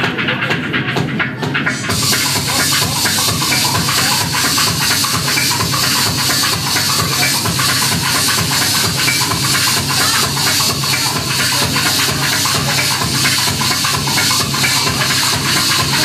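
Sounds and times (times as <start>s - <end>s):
loud noisy music: 0.0s - 16.0s.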